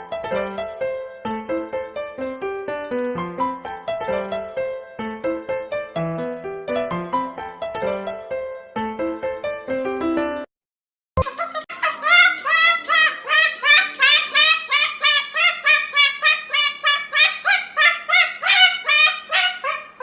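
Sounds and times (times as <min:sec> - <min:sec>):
bird calling: 0:11.2 - 0:20.0.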